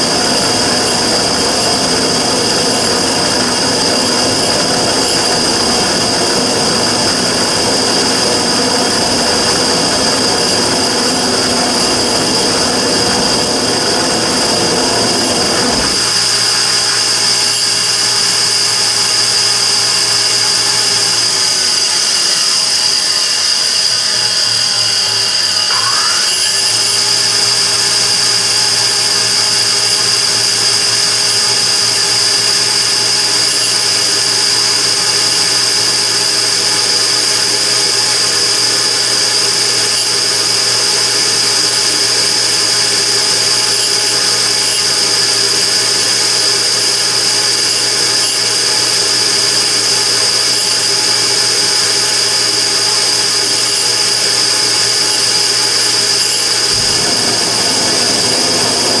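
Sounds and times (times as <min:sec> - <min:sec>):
burner high whistling whine: 0:00.0 - 0:59.0
low hum: 0:56.4 - 0:59.0.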